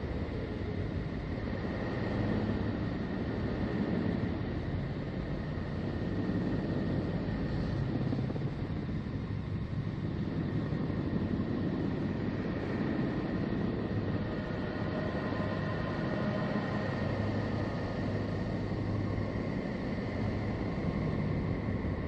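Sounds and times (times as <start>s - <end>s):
low rumbling drone: 0.0s - 22.0s.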